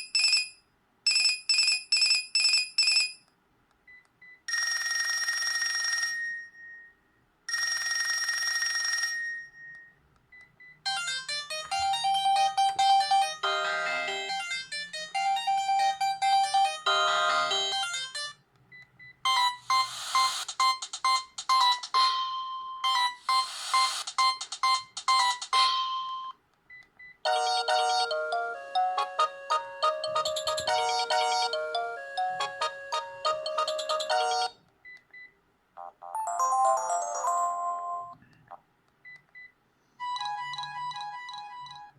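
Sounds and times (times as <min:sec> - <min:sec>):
electronic phone ring tone: 0:04.5 - 0:06.9, 0:07.5 - 0:09.9, 0:10.9 - 0:18.3, 0:27.3 - 0:34.6, 0:35.8 - 0:38.2
melodic electronic ringtone tunes: 0:10.9 - 0:18.4, 0:19.3 - 0:26.4, 0:27.3 - 0:34.6, 0:35.8 - 0:38.2, 0:40.0 - 0:41.9.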